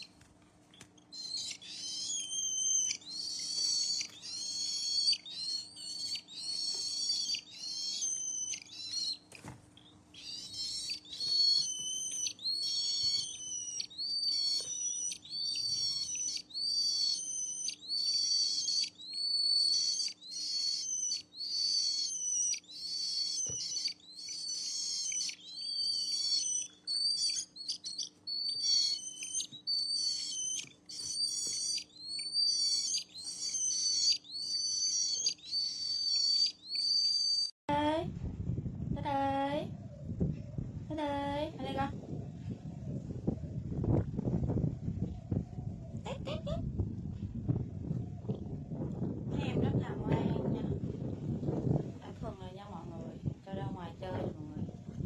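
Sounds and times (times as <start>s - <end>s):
parrot chirping calls: 1.0s - 9.3s, 10.1s - 37.5s.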